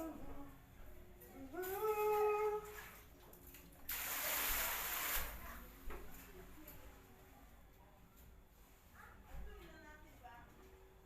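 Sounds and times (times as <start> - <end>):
person humming: 0.0 - 0.5, 1.4 - 2.7.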